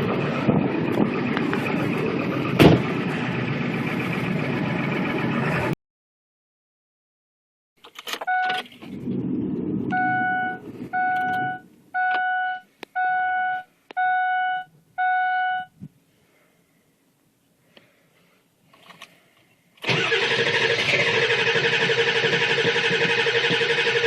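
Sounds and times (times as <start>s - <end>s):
short beep: 8.2s - 8.6s, 9.9s - 15.8s
vehicle warning chime: 9.9s - 15.8s.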